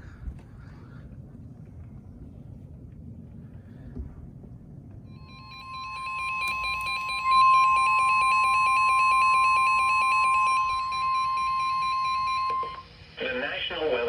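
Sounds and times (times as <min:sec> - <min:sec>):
steady alarm tone: 0:05.0 - 0:13.4
warbling electronic alarm: 0:05.0 - 0:13.5.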